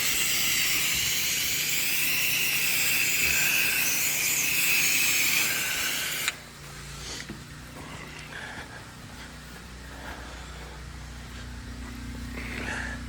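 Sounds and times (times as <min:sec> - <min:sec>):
spray gun hissing: 0:00.0 - 0:06.4.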